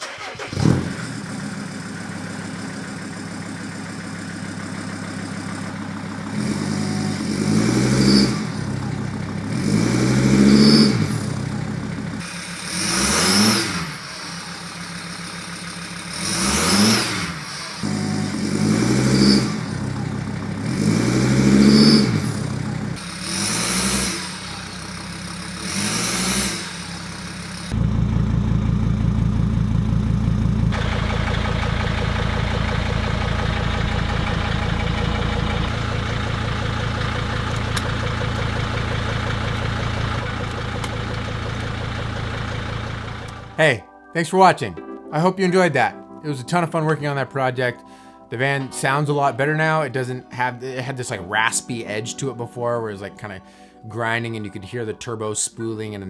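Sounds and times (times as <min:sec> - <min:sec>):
van engine revving: 0:00.0 - 0:43.6.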